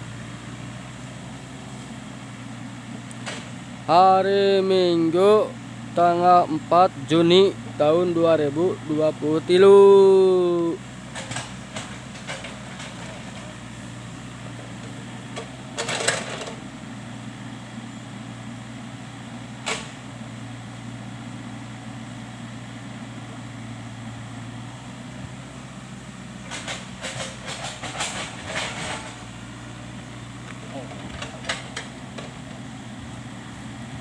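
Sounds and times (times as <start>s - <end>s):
excavator diesel engine running: 0.0s - 34.0s
machine knocks and clanks: 11.1s - 13.5s, 15.4s - 16.6s, 26.4s - 29.2s.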